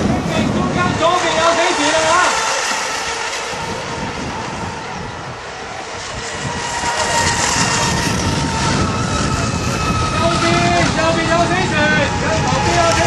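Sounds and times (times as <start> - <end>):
model boat motor whine: 0.0 - 13.0.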